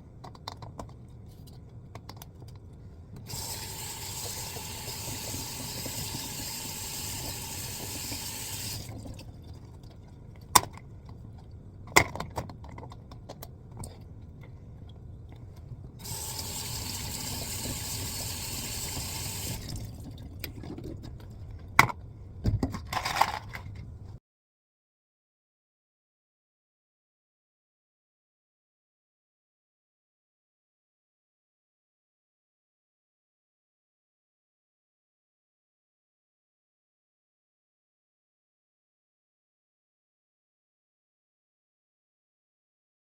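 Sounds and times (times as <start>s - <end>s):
water running from tap: 3.3s - 9.2s, 16.0s - 20.0s
small clatter: 20.0s - 23.9s.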